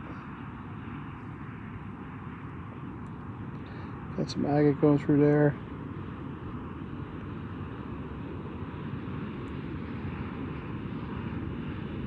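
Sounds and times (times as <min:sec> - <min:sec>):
outdoor background rush: 0:00.0 - 0:12.0.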